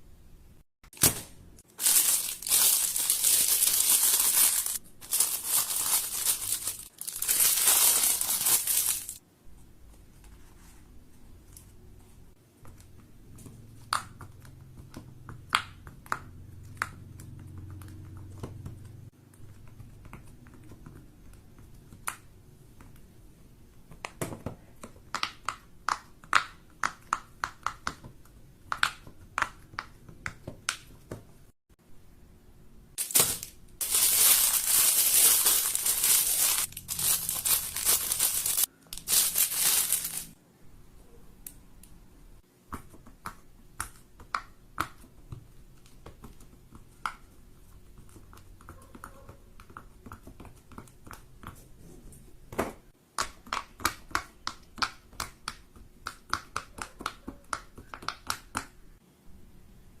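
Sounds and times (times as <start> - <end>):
crinkling and rustling of toys: 1.0 - 9.2, 33.0 - 40.4.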